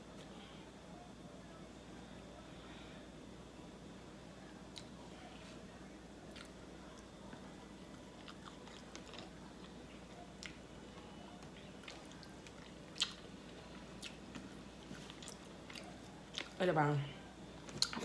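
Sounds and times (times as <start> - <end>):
person chewing meat: 8.0 - 9.4, 11.4 - 16.6, 17.7 - 18.0.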